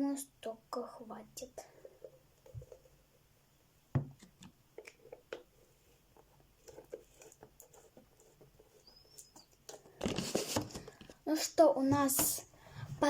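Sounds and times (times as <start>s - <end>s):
containers clicking and tapping: 1.7s - 3.0s, 4.0s - 11.2s.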